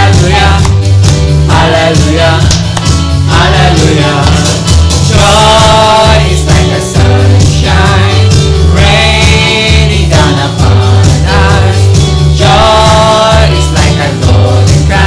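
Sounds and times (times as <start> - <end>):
band with bass line: 0.0 - 15.0
voices singing: 0.0 - 15.0.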